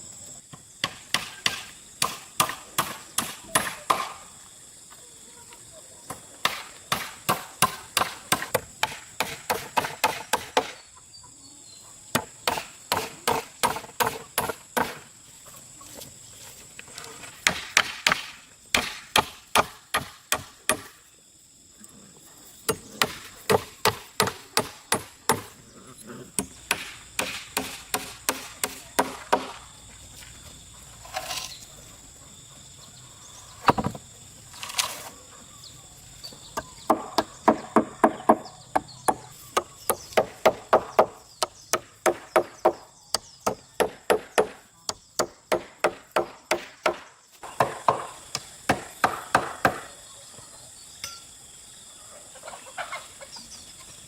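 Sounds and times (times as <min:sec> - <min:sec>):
hand tool striking wood: 0:00.8 - 0:04.2, 0:06.4 - 0:10.8, 0:12.2 - 0:15.0, 0:17.4 - 0:21.0, 0:22.6 - 0:25.5, 0:26.4 - 0:29.6, 0:36.8 - 0:49.9.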